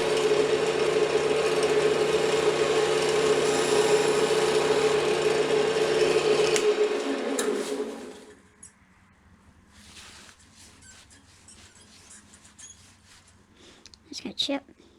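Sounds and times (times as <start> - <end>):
lathe tool scraping wood: 0.0 - 8.3
lathe motor hum: 0.0 - 8.4.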